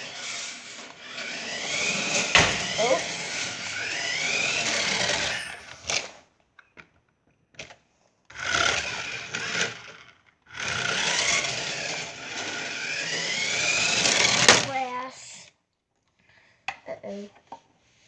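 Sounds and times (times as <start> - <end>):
toy car motor whirring: 0.0 - 6.3, 8.3 - 15.6.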